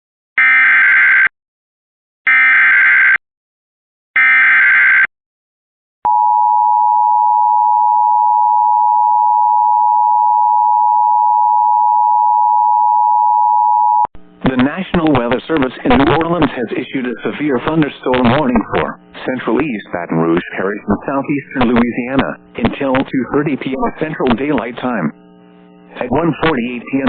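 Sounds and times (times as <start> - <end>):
digital data bursts: 15.5 - 25.1.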